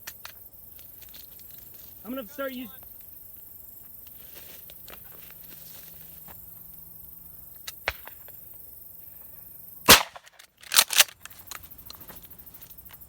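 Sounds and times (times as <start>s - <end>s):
shotgun blasts: 9.9s - 11.0s.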